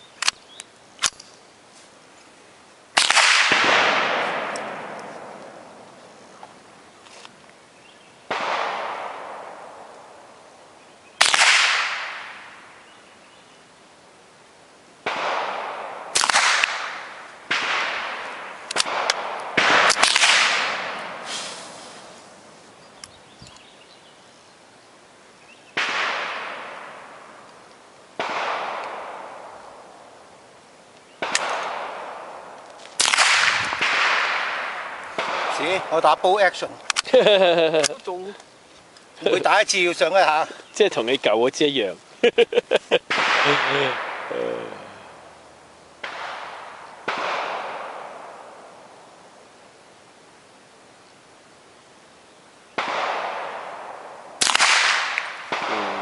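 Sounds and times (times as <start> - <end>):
gunshots echoing: 3.0 - 6.4, 8.3 - 10.2, 11.2 - 12.6, 15.0 - 22.2, 25.8 - 27.5, 28.2 - 30.0, 31.2 - 37.0, 43.0 - 45.3, 46.0 - 48.9, 52.8 - 56.0.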